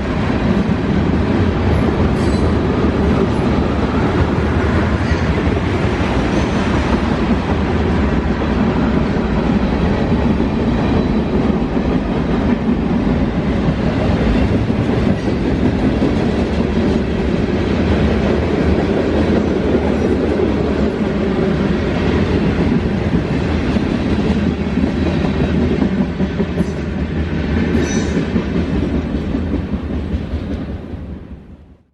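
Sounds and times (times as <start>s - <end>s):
train wheels clacking over rail joints: 0.1s - 31.0s.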